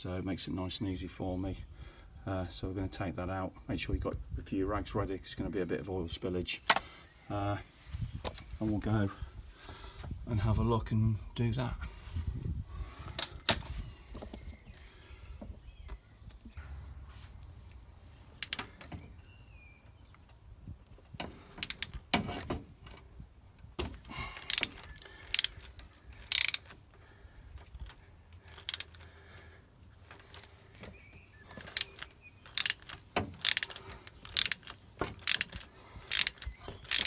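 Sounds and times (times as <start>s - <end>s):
metal socket tools clinking: 18.3s - 19.3s, 24.4s - 26.8s, 27.7s - 29.1s, 31.5s - 37.0s
ratchet clicking: 18.4s - 18.7s, 21.5s - 22.0s, 24.4s - 26.8s, 27.8s - 29.1s, 31.5s - 37.0s.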